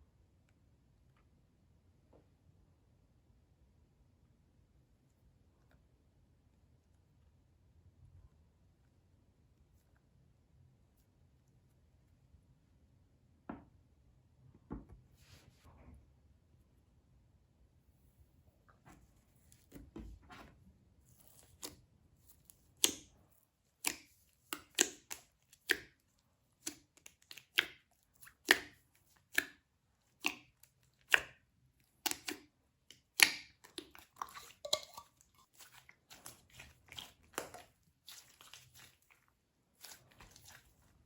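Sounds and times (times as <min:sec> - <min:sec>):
wet clicks and pops of slime: 0:32.0 - 0:34.0.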